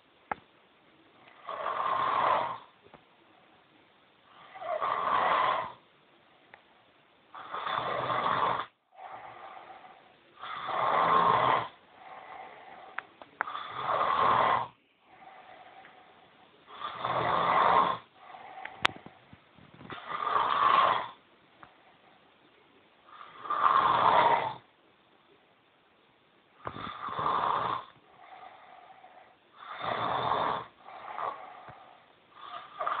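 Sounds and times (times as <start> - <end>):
quiet breaths: 0.0 - 33.0
person snoring: 1.2 - 2.7, 4.3 - 5.8, 7.4 - 19.2, 19.9 - 21.2, 23.1 - 24.6, 26.6 - 33.0
soft breathing: 11.7 - 14.0, 14.6 - 17.0, 18.0 - 23.5, 27.8 - 29.8, 30.7 - 33.0.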